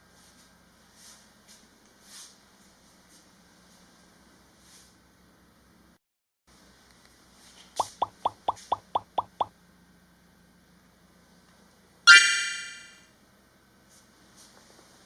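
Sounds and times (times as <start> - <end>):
short plopping tones: 7.8 - 9.5, 12.1 - 12.9
bright chime ringing: 12.1 - 13.0.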